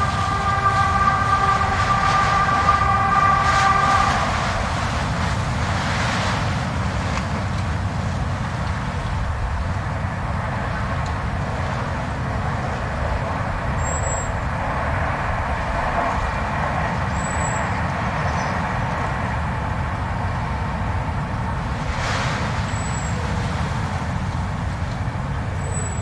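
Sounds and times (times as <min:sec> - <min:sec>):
blizzard wind rushing: 0:00.0 - 0:07.1
high wind whistles: 0:00.0 - 0:26.0.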